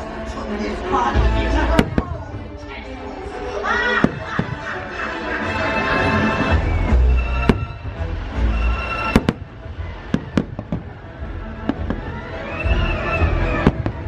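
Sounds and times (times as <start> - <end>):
orchestral music: 0.0 - 14.0
fireworks cracks and booms: 1.7 - 2.4, 4.0 - 4.7, 7.4 - 7.8, 9.0 - 12.8, 13.5 - 14.0.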